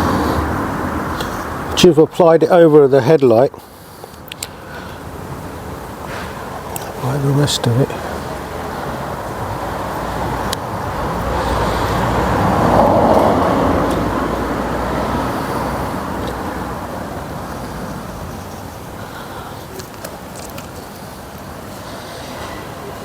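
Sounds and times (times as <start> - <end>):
vehicle passing by: 0.0 - 1.8, 6.1 - 18.6.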